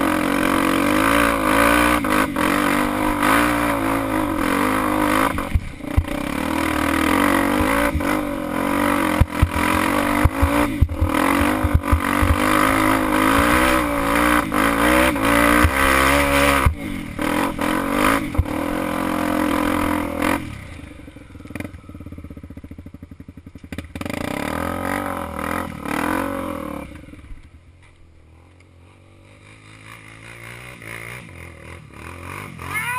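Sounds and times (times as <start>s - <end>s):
motorcycle engine revving: 0.0s - 32.9s
bike knocks and rattles: 9.1s - 12.6s.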